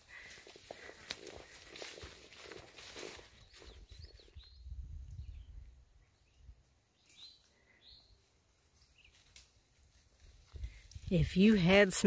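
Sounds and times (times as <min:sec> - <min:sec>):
faint songbird chirps: 0:01.5 - 0:09.4.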